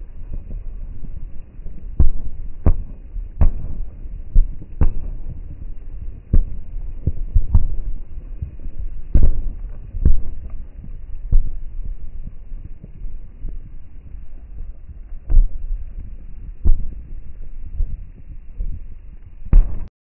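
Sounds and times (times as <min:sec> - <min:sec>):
fireworks booming: 0:00.0 - 0:19.9
steady low rumble: 0:00.0 - 0:19.9.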